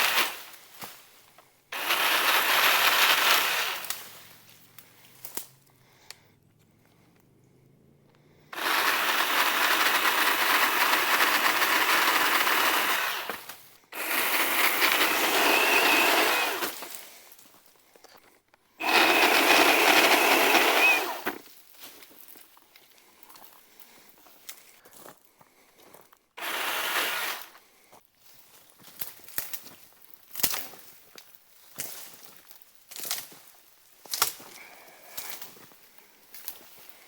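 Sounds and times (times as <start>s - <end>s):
pole saw cutting: 0.0s - 0.4s, 1.7s - 4.3s, 8.5s - 17.0s, 18.8s - 21.4s, 26.4s - 27.5s.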